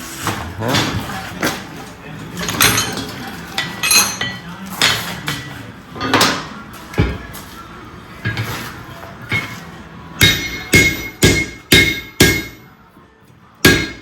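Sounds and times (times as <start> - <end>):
hammer striking steel on anvil: 9.3 - 9.6, 10.2 - 12.7, 13.6 - 14.0.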